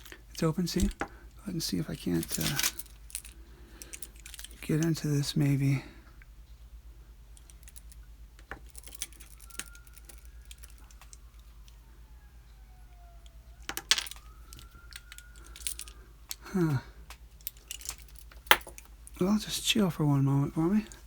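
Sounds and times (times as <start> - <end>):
lock picks clicking in padlock: 8.5 - 11.3, 13.6 - 16.4, 17.4 - 18.9.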